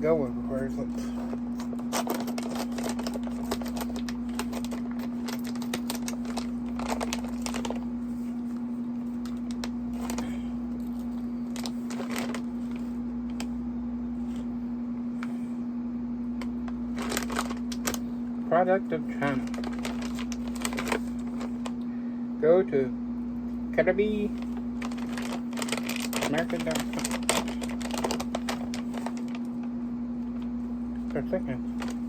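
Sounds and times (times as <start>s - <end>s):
air conditioner hum: 0.0s - 32.0s
plastic bag crinkling: 1.1s - 13.5s, 16.5s - 18.2s, 19.1s - 21.8s, 24.3s - 29.7s, 30.3s - 32.0s
scissors cutting bag: 1.6s - 7.8s, 17.0s - 18.0s, 24.5s - 29.4s.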